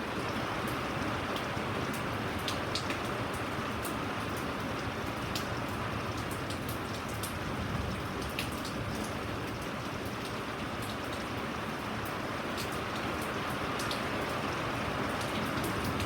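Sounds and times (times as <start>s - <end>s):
steady rain falling: 0.0s - 16.0s
raindrop ticks: 1.4s - 7.4s, 12.0s - 14.1s.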